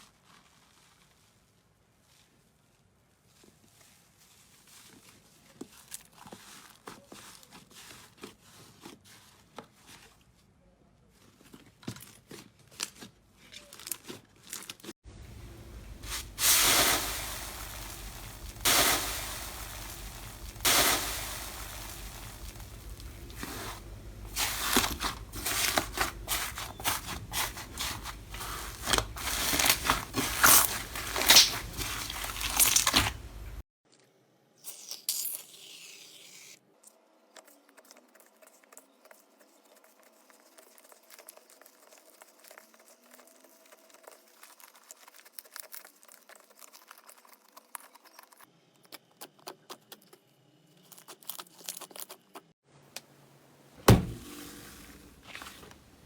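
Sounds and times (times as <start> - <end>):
steady low hum: 15.1 - 26.5
slime crackling and popping: 15.6 - 33.6.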